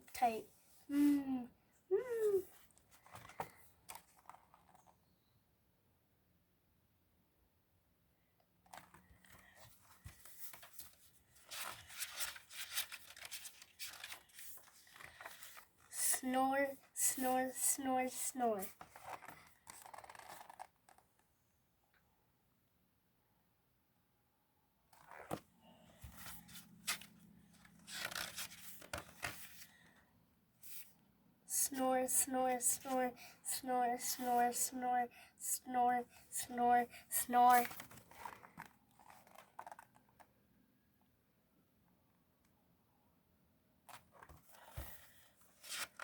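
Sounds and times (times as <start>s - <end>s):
book pages turning: 2.7s - 5.0s, 8.7s - 17.4s, 18.6s - 21.2s, 24.9s - 25.4s, 26.0s - 29.9s, 37.4s - 40.3s, 43.9s - 46.0s.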